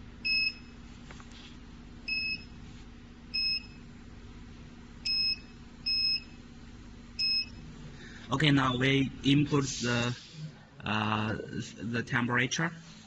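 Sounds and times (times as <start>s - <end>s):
faint low hum: 0.0s - 13.0s
electronic key-press beeps: 0.2s - 0.8s, 2.1s - 2.5s, 3.4s - 3.8s, 5.0s - 6.4s, 7.2s - 7.6s.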